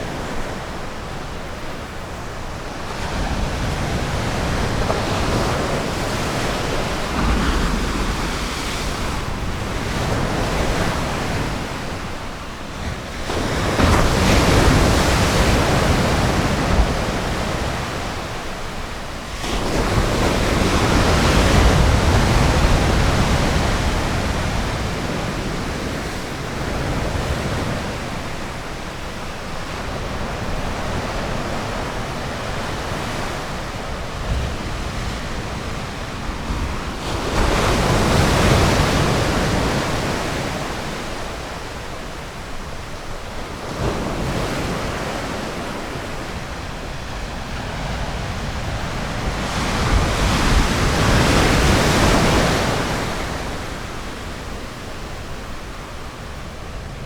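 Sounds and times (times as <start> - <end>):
ocean surf breaking: 2.8 - 26.6.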